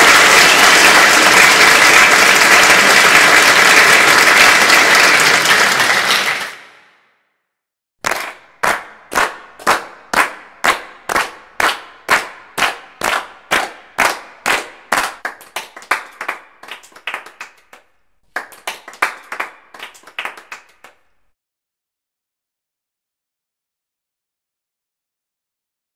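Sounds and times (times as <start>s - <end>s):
person clapping hands: 0.0s - 7.0s, 8.0s - 21.1s.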